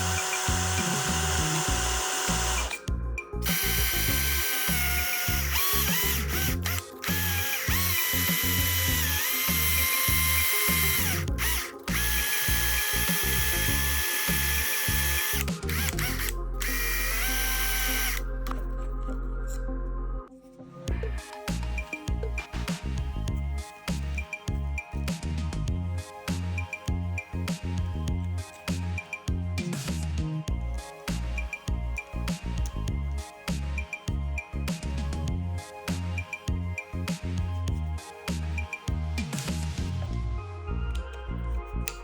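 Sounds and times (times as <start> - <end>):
small electric power tool whining: 0.0 - 18.2
background music: 0.0 - 42.0.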